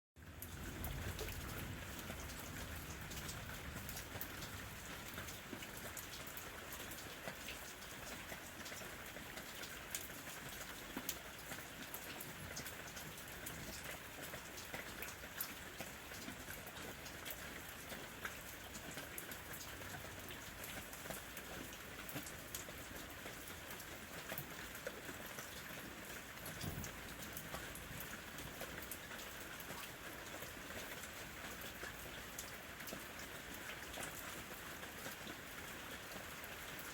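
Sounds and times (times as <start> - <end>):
raindrops pattering on surface: 0.2 - 36.9
steady rain hiss: 0.2 - 36.9.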